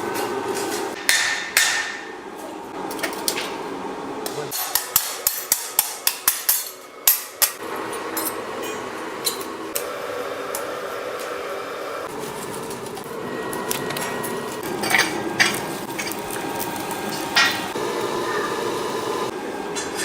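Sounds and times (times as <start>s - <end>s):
bronze clanking and ringing: 8.2s - 9.4s.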